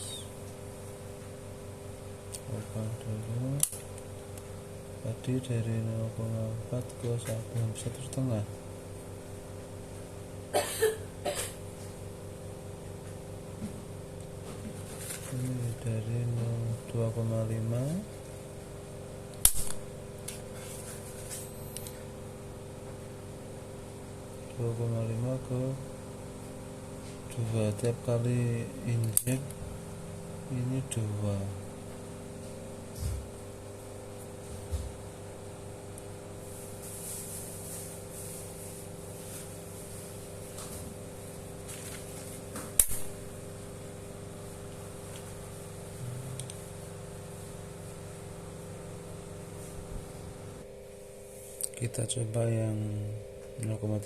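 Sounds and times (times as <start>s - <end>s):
injector pen snap: 3.6s - 4.5s, 19.3s - 20.4s, 42.8s - 43.1s.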